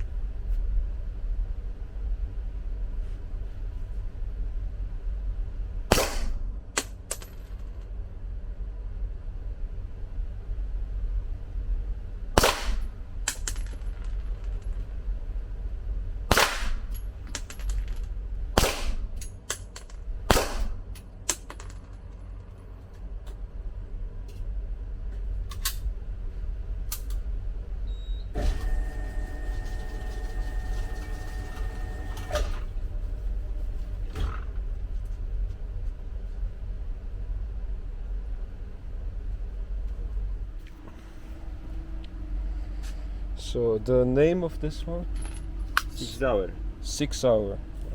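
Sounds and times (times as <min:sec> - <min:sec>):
steady mechanical hum: 0:00.0 - 0:47.9
loud gunshots: 0:05.9 - 0:06.5, 0:12.4 - 0:12.9, 0:16.3 - 0:16.9, 0:18.6 - 0:19.1, 0:20.3 - 0:20.8.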